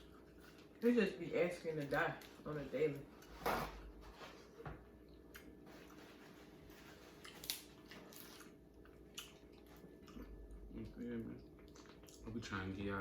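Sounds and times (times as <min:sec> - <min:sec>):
faint steady hum: 0:00.0 - 0:13.0
eating noises: 0:07.1 - 0:12.3.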